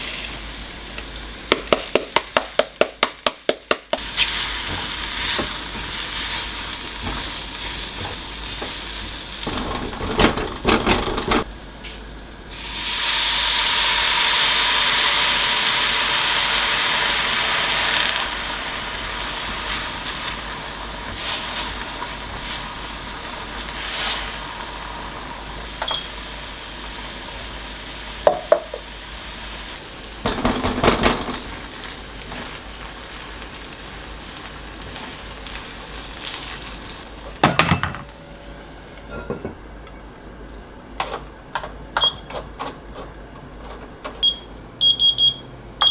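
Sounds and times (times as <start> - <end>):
food sizzling in a pan: 0.0 - 2.6, 4.0 - 11.5, 12.5 - 37.5
utensil scraping and clattering: 7.0 - 11.5, 30.2 - 32.6.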